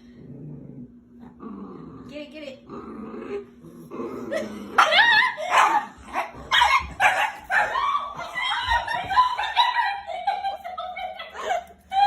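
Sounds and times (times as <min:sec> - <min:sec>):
dog yipping and barking: 0:04.8 - 0:08.0.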